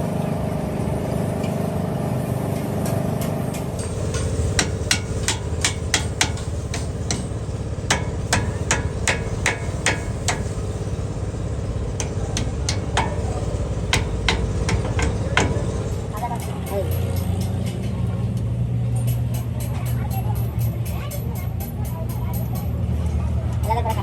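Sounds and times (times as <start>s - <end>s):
steady low hum: 0.0s - 16.5s
hammer blows on metal: 2.8s - 17.3s.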